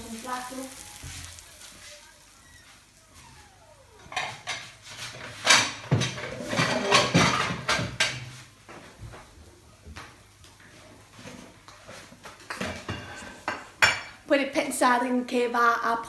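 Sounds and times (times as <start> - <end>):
dishes and utensils clattering: 4.1 - 8.4, 11.2 - 14.2.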